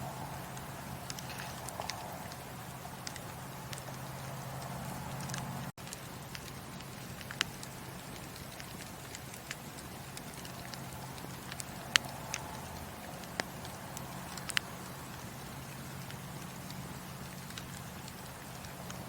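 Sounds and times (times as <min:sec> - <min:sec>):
fire rumbling and hissing: 0:00.0 - 0:19.0
wood crackling and popping: 0:00.0 - 0:19.0.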